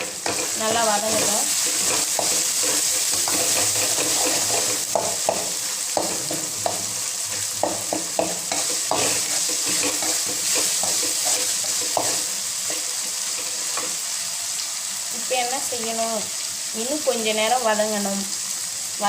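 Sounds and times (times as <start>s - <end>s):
spoon scraping against pan: 0.0s - 14.1s
vegetables sizzling in a pan: 0.0s - 19.0s.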